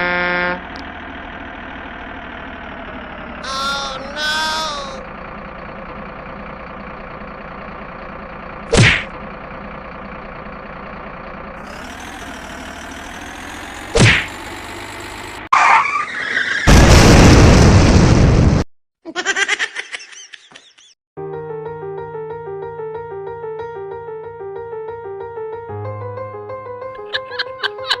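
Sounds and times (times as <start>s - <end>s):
vehicle engine running: 0.0s - 15.5s
loud burst of noise: 16.7s - 18.7s.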